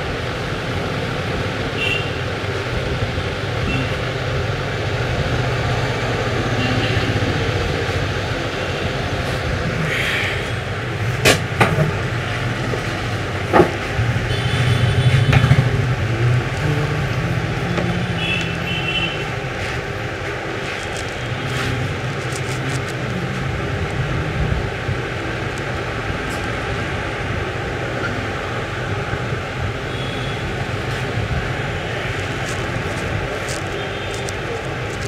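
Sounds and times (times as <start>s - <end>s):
road traffic rumble: 0.0s - 35.0s.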